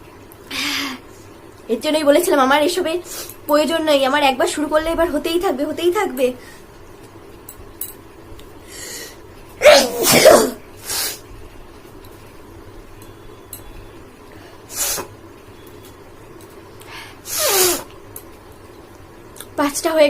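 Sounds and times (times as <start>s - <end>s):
woman sneezing: 9.6s - 10.6s.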